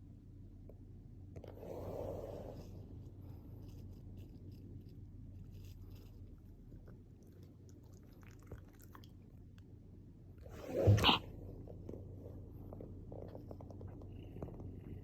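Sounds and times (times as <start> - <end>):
dog chewing and gnawing: 5.9 - 9.3.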